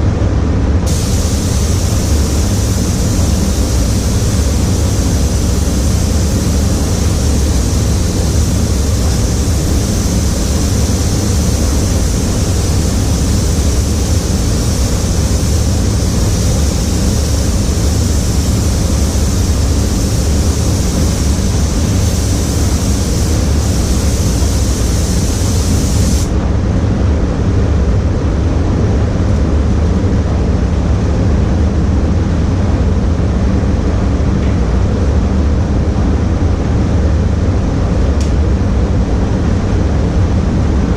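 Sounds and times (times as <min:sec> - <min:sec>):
ventilation low rumble: 0:00.0 - 0:40.9
paint spray gun hissing: 0:00.9 - 0:26.3.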